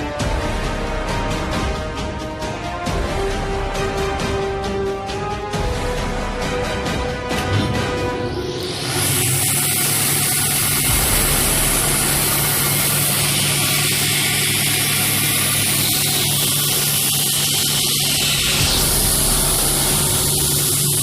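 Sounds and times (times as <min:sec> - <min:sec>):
loud rushing noise: 0:07.3 - 0:21.0
mixer machine humming: 0:07.3 - 0:21.0.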